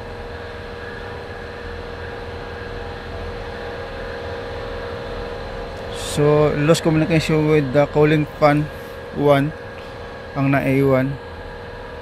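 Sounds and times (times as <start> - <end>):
steady tones: 5.3 - 11.3.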